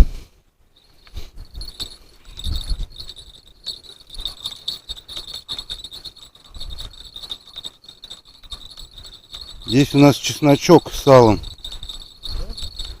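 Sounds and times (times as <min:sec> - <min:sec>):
crickets chirring: 0:00.8 - 0:13.0
wind buffeting microphone: 0:01.4 - 0:03.2.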